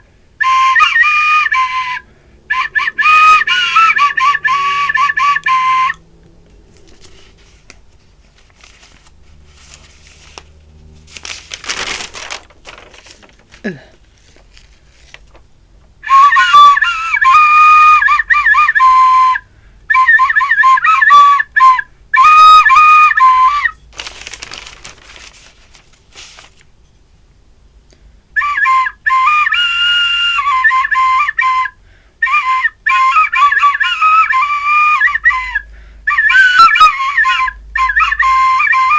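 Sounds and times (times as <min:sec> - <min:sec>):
flute playing slow melody: 0:00.0 - 0:07.4, 0:15.9 - 0:23.9, 0:28.4 - 0:38.9.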